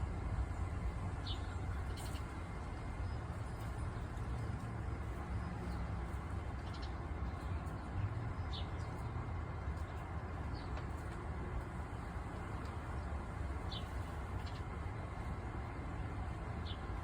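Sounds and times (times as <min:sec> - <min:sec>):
low outdoor rumble: 0:00.0 - 0:17.0.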